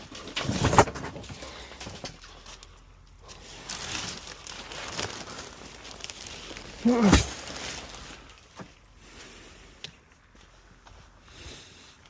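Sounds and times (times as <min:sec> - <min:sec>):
debris rustling and crinkling: 0:00.0 - 0:12.0
low grunt-like vocal sound: 0:06.8 - 0:07.3.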